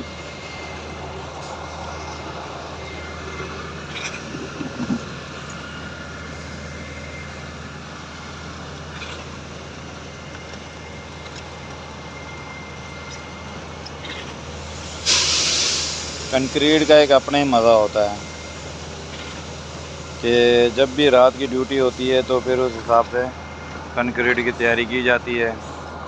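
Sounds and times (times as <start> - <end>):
diesel engine running: 0.0 - 26.0
sudden loud hiss: 14.6 - 22.9.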